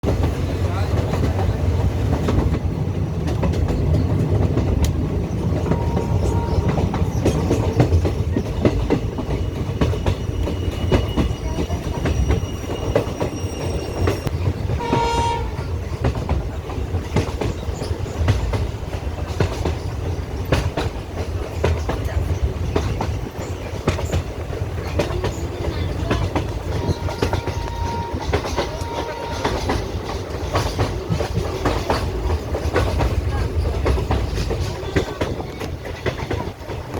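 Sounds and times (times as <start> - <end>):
train rumbling: 0.0 - 36.9
wheels clicking over rail joints: 0.0 - 36.9
train horn: 5.6 - 7.3, 14.0 - 15.8, 26.6 - 30.3.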